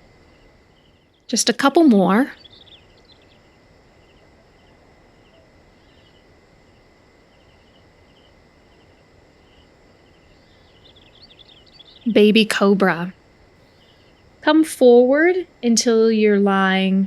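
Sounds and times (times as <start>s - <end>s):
cricket chirping: 0.0s - 17.0s
low background hiss: 0.0s - 17.0s.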